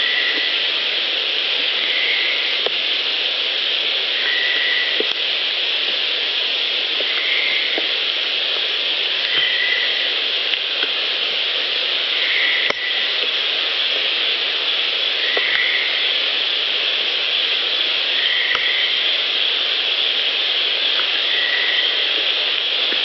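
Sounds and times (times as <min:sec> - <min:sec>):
playback hiss: 0:00.0 - 0:23.0.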